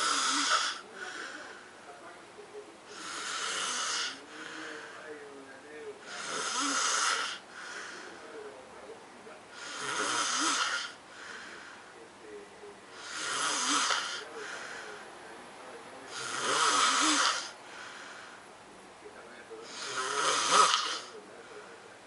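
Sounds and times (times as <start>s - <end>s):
man snoring: 0.0s - 1.6s, 2.9s - 5.0s, 6.0s - 8.1s, 9.6s - 11.6s, 13.0s - 14.8s, 16.1s - 17.6s, 19.7s - 21.2s.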